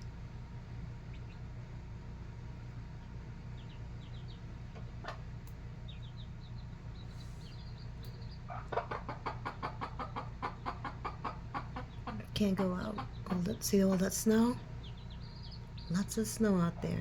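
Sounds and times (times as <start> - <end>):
baby chicks peeping: 0.0 - 17.0
steady low hum: 0.0 - 17.0
hen clucking: 5.9 - 17.0.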